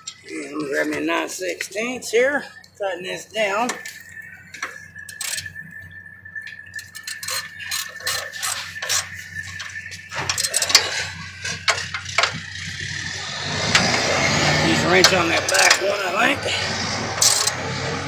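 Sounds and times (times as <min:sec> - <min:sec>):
metal tool clicking and clinking: 0:17.2 - 0:17.6.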